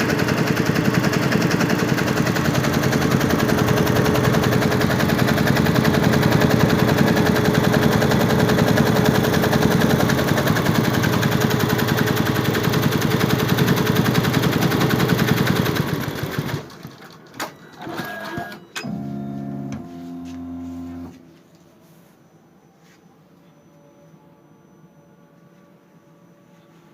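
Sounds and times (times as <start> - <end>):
embroidery machine stitching: 0.0 - 19.9.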